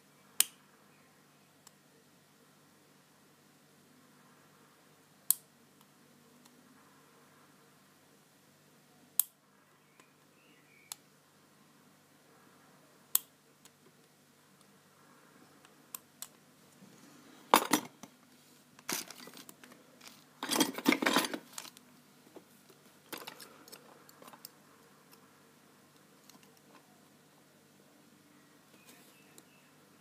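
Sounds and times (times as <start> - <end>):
metallic clinking and rattling: 20.4 - 21.7.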